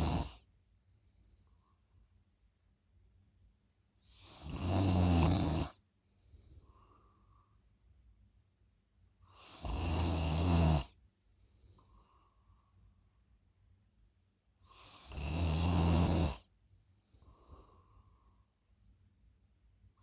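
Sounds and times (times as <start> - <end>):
person snoring loudly: 0.0 - 0.4, 4.2 - 5.8, 9.4 - 10.9, 14.9 - 16.4.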